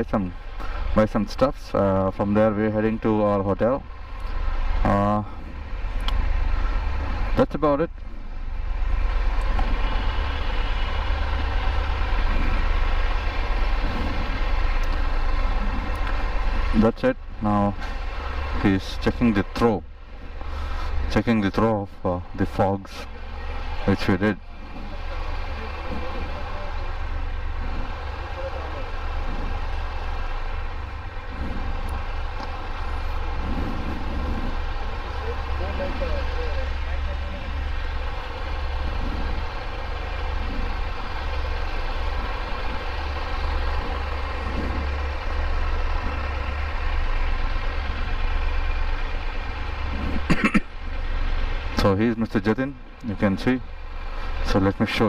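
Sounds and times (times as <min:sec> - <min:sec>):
motorcycle engine idling: 0:00.0 - 0:55.0
faint voices: 0:22.2 - 0:47.1.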